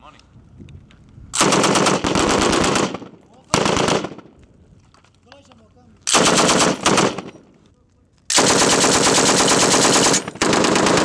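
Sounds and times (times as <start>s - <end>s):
machine gun firing bursts: 1.4s - 4.3s, 6.1s - 7.4s, 8.3s - 11.0s.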